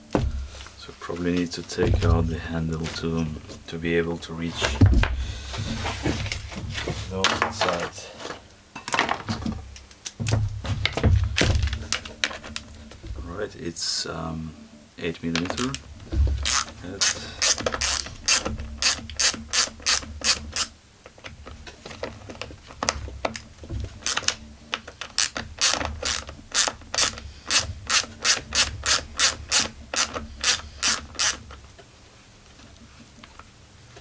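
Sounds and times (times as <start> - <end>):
ratchet wrench clicking: 16.4 - 20.7, 25.1 - 31.4.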